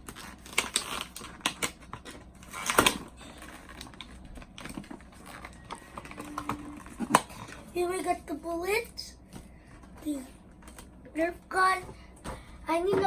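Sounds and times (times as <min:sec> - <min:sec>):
packaging crackle: 0:00.0 - 0:07.6
plastic packaging handled: 0:00.0 - 0:07.7.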